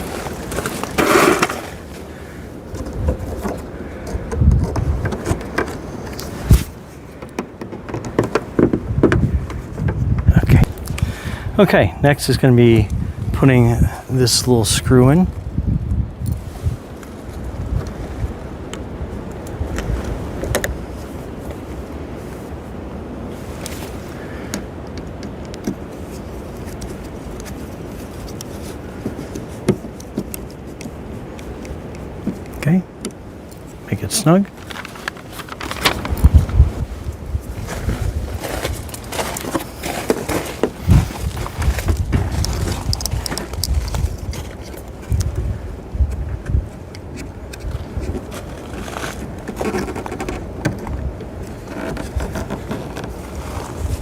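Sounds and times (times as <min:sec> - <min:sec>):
plastic handling knocks and clicks: 0:07.2 - 0:10.3.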